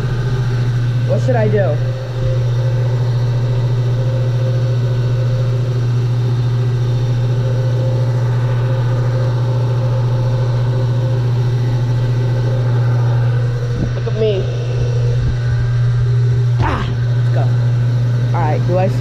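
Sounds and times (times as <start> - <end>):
refrigeration unit humming: 0.0 - 19.0.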